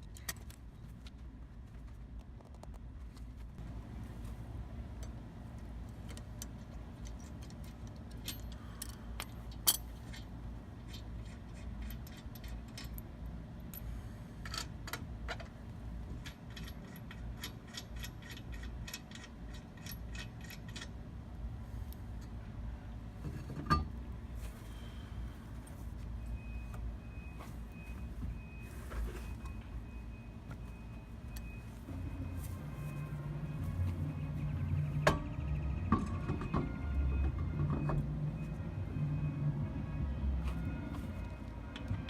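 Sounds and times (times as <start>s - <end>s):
metal tools clinking: 6.5s - 13.1s.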